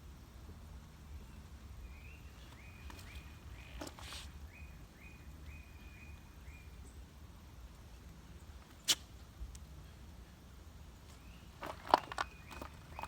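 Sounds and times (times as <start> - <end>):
short rustle: 2.4 - 4.4.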